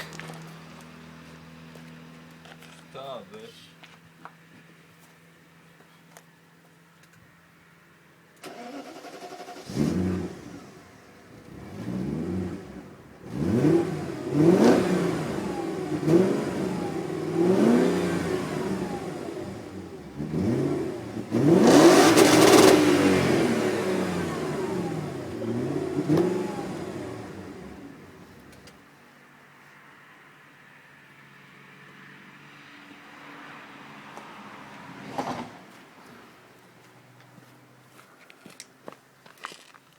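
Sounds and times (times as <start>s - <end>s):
car engine starting and revving: 8.4s - 28.8s.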